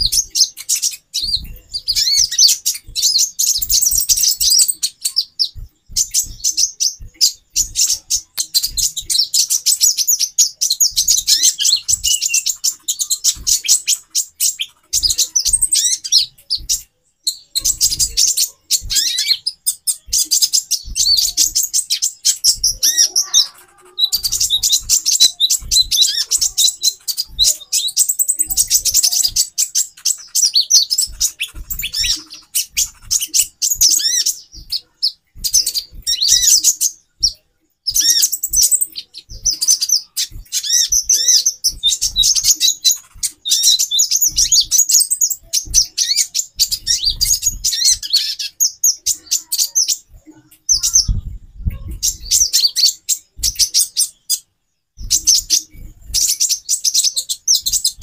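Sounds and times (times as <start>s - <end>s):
birds twittering high chirps: 0.0s - 58.0s.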